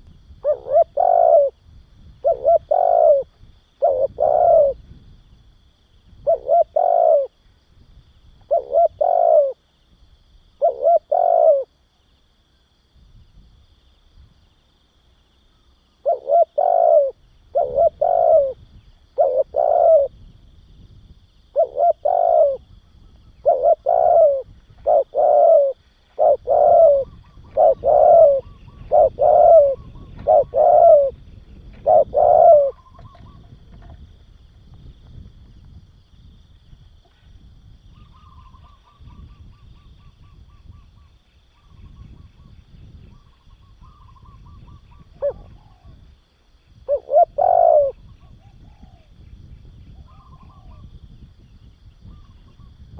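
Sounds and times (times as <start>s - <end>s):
dove cooing: 0.0s - 1.6s, 2.2s - 4.9s, 6.2s - 7.4s, 8.4s - 9.6s, 10.6s - 11.8s, 16.0s - 20.2s, 21.5s - 22.7s, 23.3s - 34.0s, 43.1s - 46.1s, 46.8s - 49.2s, 49.8s - 50.9s.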